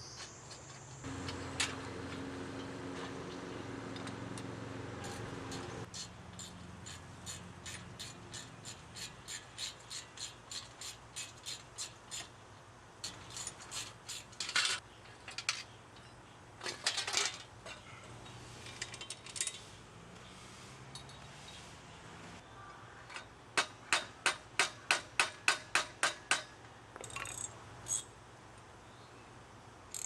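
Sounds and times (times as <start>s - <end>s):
metal clinks and rattles: 13.0s - 19.7s, 20.9s - 21.6s.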